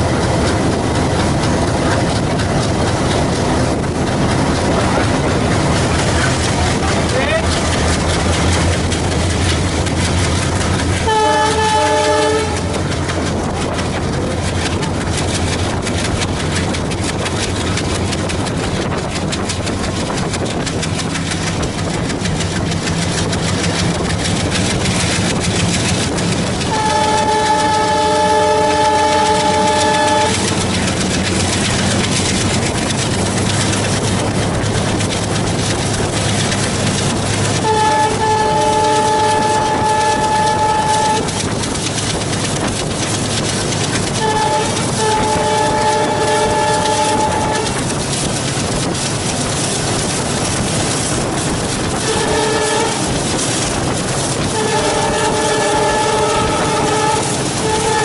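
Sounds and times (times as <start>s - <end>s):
diesel locomotive engine drone: 0.0s - 58.0s
wheels clattering over rail joints: 0.0s - 58.0s
locomotive horn: 11.0s - 13.0s, 26.6s - 30.6s, 37.5s - 41.5s, 44.2s - 47.9s, 52.0s - 53.2s, 54.5s - 58.0s.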